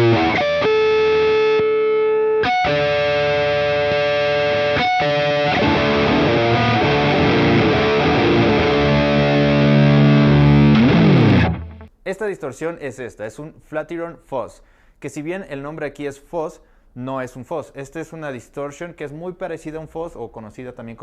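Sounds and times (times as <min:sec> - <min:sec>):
distorted electric guitar: 0:00.0 - 0:11.9.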